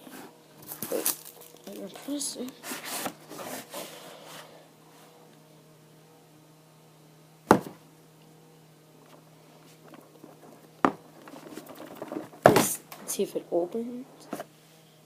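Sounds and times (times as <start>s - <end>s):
faint steady hum: 0.0s - 15.0s
cardboard box knock: 7.5s - 7.8s.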